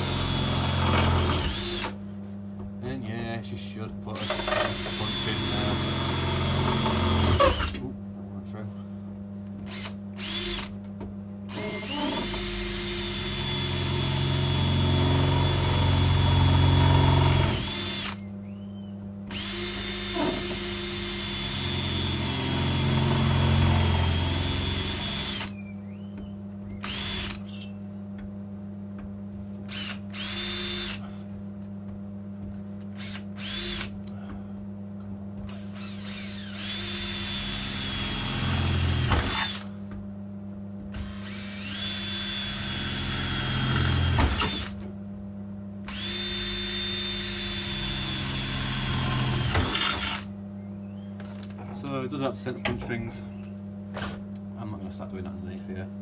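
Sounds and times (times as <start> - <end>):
electric drill boring through metal: 0.0 - 2.0, 4.2 - 7.8, 9.7 - 10.7, 11.5 - 18.2, 19.3 - 25.5, 26.8 - 27.4, 29.7 - 31.0, 33.0 - 33.9, 35.5 - 39.7, 41.0 - 44.8, 45.9 - 50.3
steady low hum: 0.0 - 56.0.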